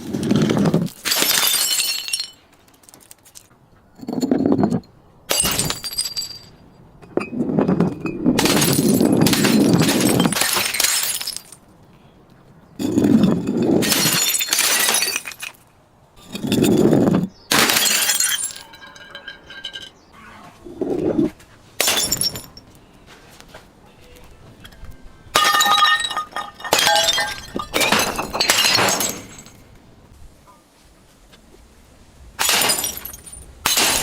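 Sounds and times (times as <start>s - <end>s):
glass shattering crashes: 0.2s - 2.4s, 5.3s - 6.5s, 8.4s - 11.6s, 12.8s - 15.6s, 17.5s - 20.0s, 21.8s - 22.6s, 25.4s - 29.6s, 32.4s - 34.0s
ringing glass shards tinkling: 17.5s - 20.0s.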